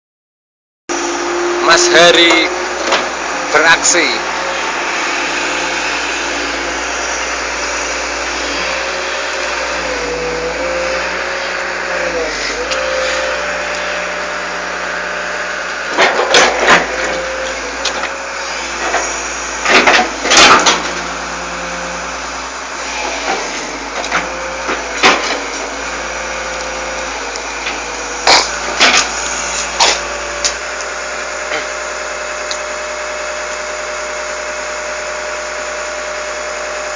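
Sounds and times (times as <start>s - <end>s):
excavator engine running: 0.9s - 36.9s
loud clanks and knocks: 2.3s - 3.2s, 15.9s - 18.2s, 18.8s - 21.0s, 23.1s - 25.6s, 27.6s - 29.2s.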